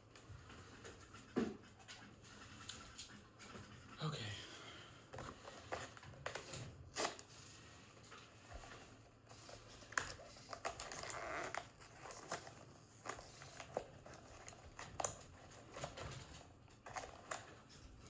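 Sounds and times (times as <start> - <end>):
packaging rustle: 5.2 - 18.0.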